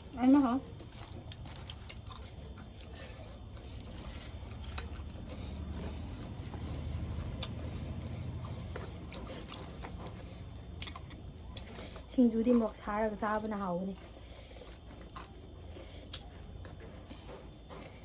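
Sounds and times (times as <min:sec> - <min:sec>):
soft low rumble: 0:00.0 - 0:11.7
chewing: 0:00.0 - 0:18.0.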